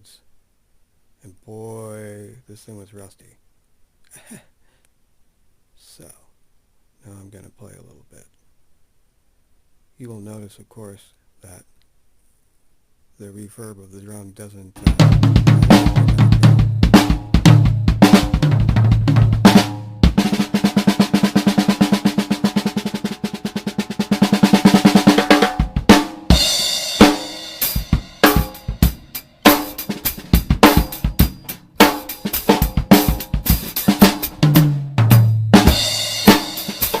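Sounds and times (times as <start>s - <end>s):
cymbals washing: 14.8s - 18.4s, 22.6s - 34.4s, 35.5s - 37.0s
bass drum: 14.8s - 37.0s
low ringing drum notes: 14.8s - 37.0s
snare drum strokes: 14.8s - 37.0s.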